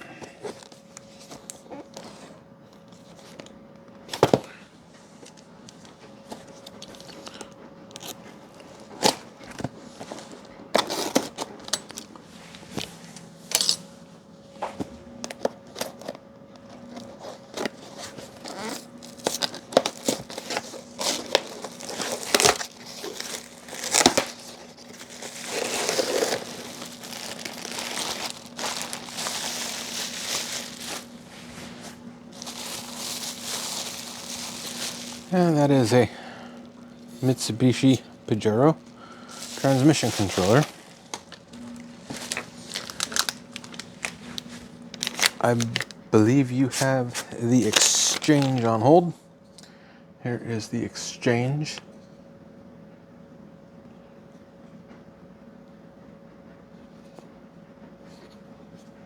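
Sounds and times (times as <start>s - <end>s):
packing material crinkling: 5.2s - 13.8s, 15.2s - 49.0s.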